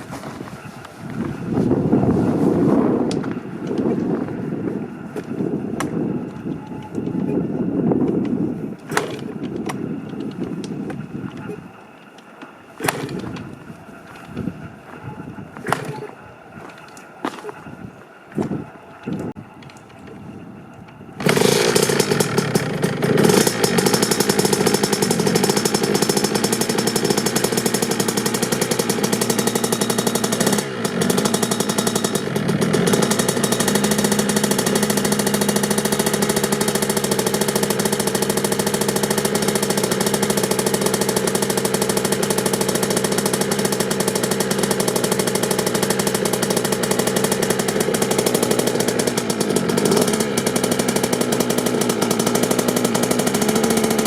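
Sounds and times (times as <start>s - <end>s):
two-stroke engine starting and running: 0.0s - 17.9s, 18.5s - 54.0s.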